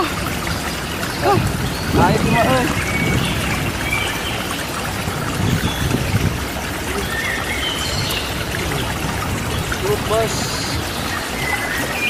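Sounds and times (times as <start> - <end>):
water trickling and splashing: 0.0 - 12.0.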